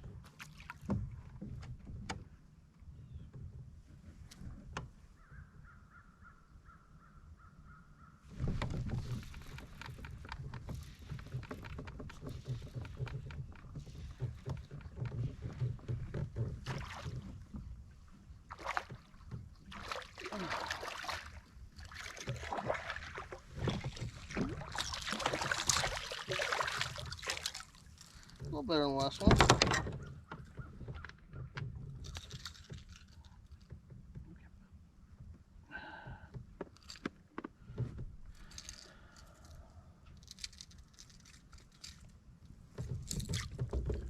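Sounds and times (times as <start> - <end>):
kayak handling noise: 0.0 - 5.4, 8.3 - 44.0
water splashing: 18.5 - 29.4.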